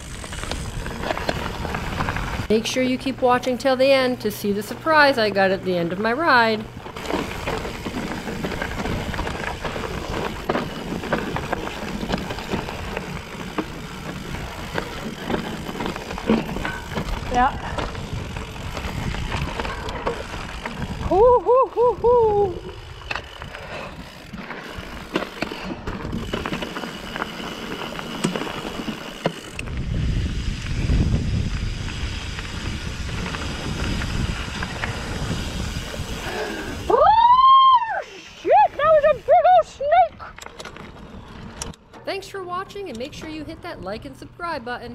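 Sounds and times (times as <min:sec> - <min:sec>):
bike tyres rumbling over stone: 0:00.0 - 0:02.5, 0:06.0 - 0:37.9
bike knocking and rattling: 0:00.0 - 0:04.0, 0:04.6 - 0:44.9.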